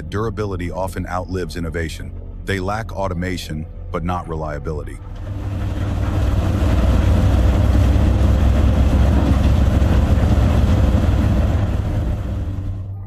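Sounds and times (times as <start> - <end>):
heavy machinery rumbling: 5.0 - 13.0.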